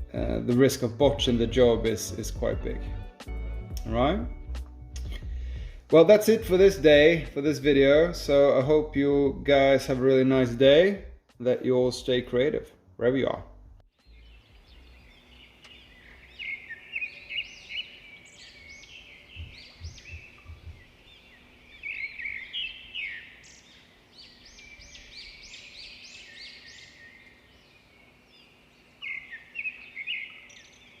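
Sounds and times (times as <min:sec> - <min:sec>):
soft low thumps: 0:02.4 - 0:05.8, 0:06.4 - 0:08.4, 0:09.0 - 0:09.6, 0:19.3 - 0:20.9
small birds singing: 0:12.0 - 0:31.0.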